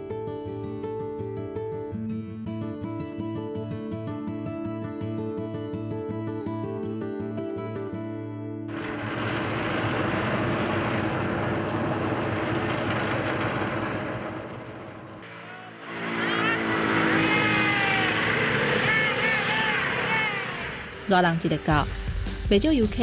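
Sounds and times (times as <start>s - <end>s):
vehicle engines running: 8.7s - 22.2s.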